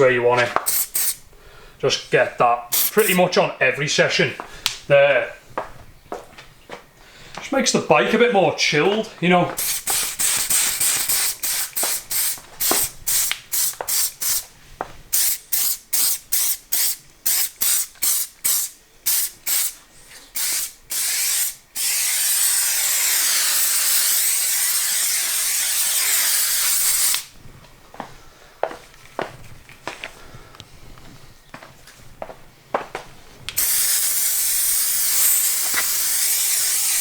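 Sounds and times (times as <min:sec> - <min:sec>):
aerosol spray hissing: 0:00.5 - 0:01.2, 0:02.7 - 0:03.3, 0:09.5 - 0:14.5, 0:15.1 - 0:27.3, 0:33.6 - 0:37.0.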